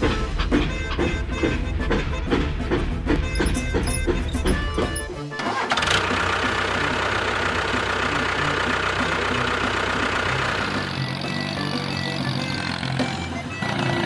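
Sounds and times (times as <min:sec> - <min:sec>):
motor buzzing: 0:09.1 - 0:14.0.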